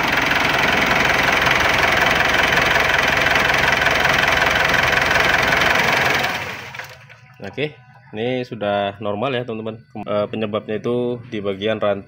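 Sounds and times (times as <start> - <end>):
car engine idling: 0.0 - 7.8.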